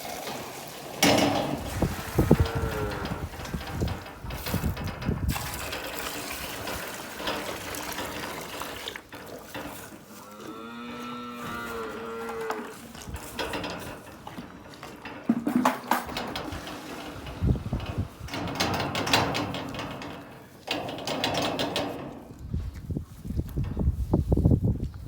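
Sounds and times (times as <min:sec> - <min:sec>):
clattering knocks: 0:01.0 - 0:05.4, 0:13.0 - 0:22.2
calf mooing: 0:02.2 - 0:03.4, 0:10.2 - 0:13.1.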